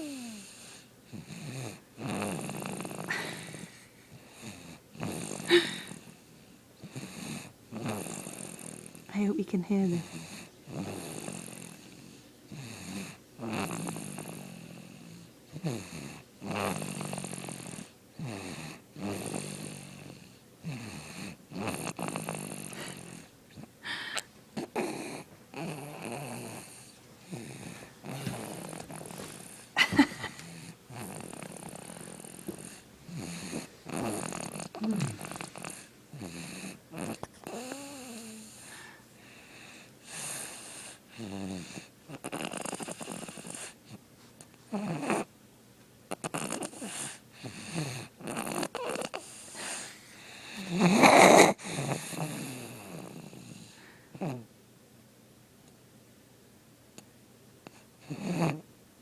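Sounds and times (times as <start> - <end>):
person snoring: 0.0 - 6.2, 12.6 - 39.0, 46.1 - 54.4.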